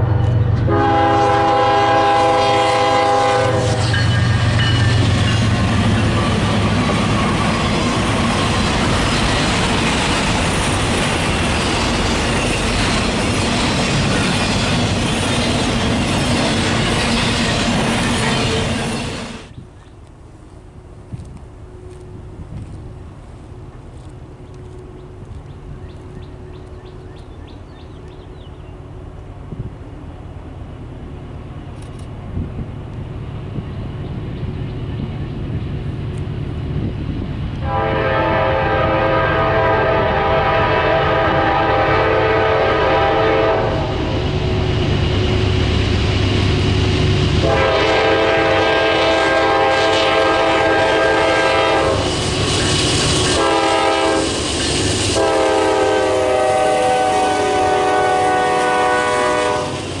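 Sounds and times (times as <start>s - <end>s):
locomotive air horn blasts: 0.0s - 5.0s, 37.6s - 44.0s, 47.4s - 52.1s, 53.2s - 54.4s, 55.1s - 59.8s
train rumbling: 0.0s - 60.0s.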